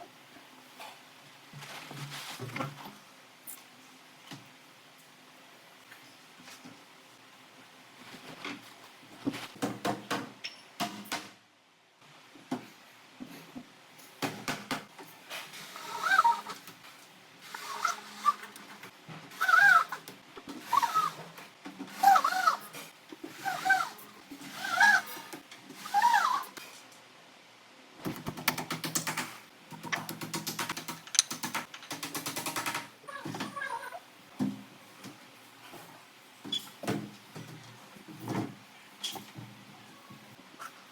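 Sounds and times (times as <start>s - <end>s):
wooden parts knocking and clattering: 28.1s - 33.6s.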